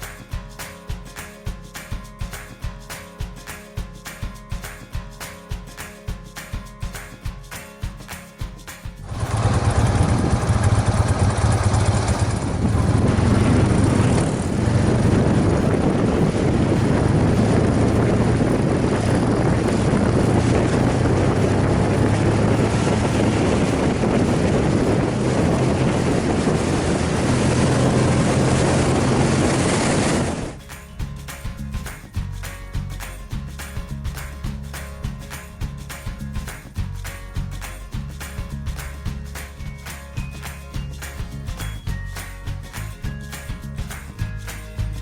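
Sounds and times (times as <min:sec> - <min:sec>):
rush of noise: 0:09.0 - 0:30.6
motorcycle engine running: 0:09.0 - 0:31.2.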